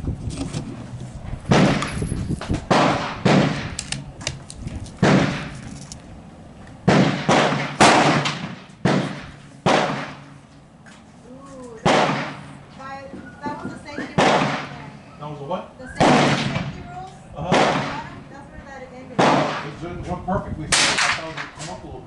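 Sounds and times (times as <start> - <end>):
rifle shots echoing: 2.7 - 3.8, 5.0 - 5.5, 6.8 - 10.3, 11.8 - 12.5, 14.2 - 14.8, 16.0 - 16.6, 17.5 - 18.1, 19.2 - 19.8, 20.7 - 21.6.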